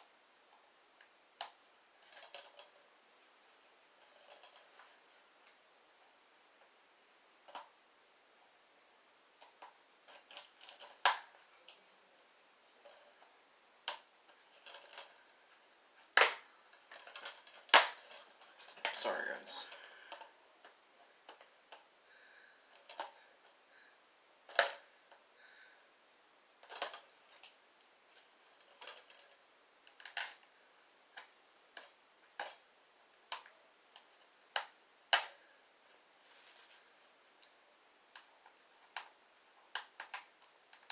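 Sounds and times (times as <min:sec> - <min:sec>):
plastic case clicks and crinkles: 0:28.6 - 0:30.5.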